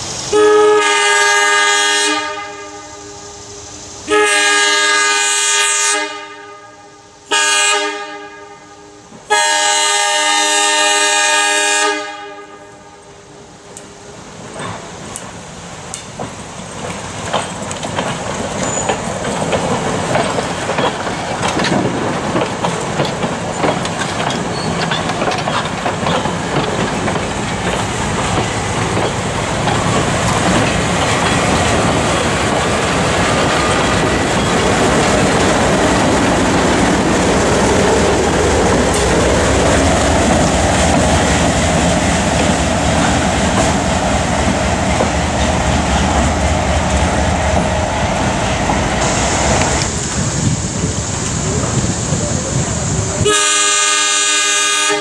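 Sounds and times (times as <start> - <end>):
wheels clicking over rail joints: 13.7 - 53.3.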